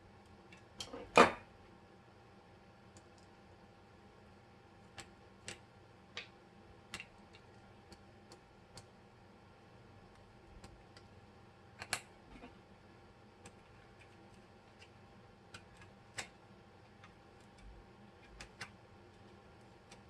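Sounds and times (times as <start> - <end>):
small metallic clicks and taps: 6.9 - 8.9.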